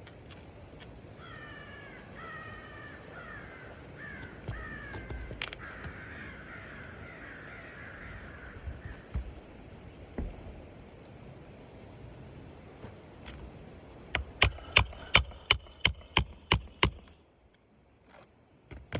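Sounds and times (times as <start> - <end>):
crow cawing: 1.2 - 9.2.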